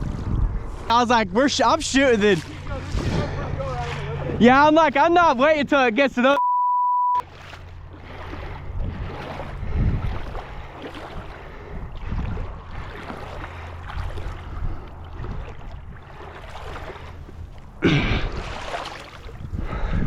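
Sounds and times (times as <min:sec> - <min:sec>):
wind buffeting microphone: 0:00.0 - 0:05.4, 0:07.8 - 0:20.0.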